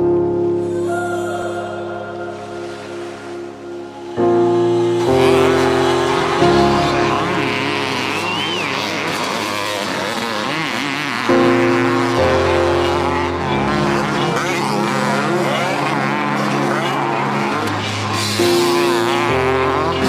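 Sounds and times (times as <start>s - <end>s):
background music with held chords: 0.0s - 20.0s
motocross bike engines revving: 4.0s - 20.0s.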